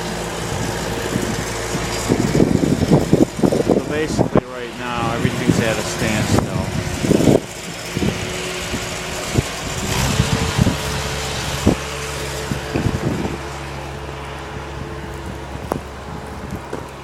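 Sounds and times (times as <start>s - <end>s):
motor humming: 0.0s - 17.0s
wind hiss: 0.0s - 17.0s.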